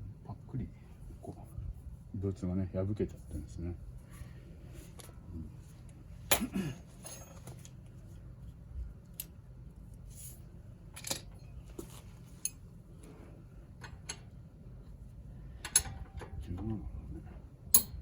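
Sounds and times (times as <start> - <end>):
metal tools clinking: 6.3 - 7.6.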